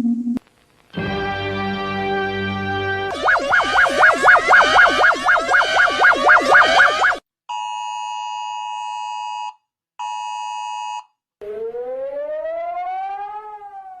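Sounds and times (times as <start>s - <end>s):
siren rising in pitch: 2.8s - 7.2s, 11.4s - 14.0s
two-tone alert tone: 3.1s - 7.2s.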